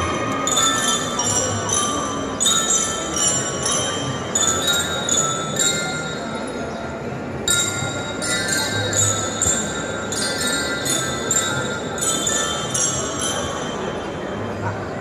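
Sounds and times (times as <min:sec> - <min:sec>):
struck bell notes: 0:07.5 - 0:14.5.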